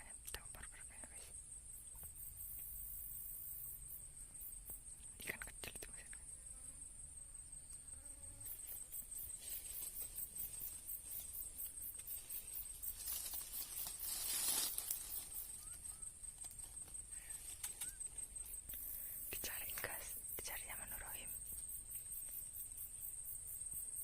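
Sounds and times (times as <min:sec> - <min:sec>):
insects buzzing in pulses: 0:00.0 - 0:24.0
rustling noise: 0:09.3 - 0:18.3.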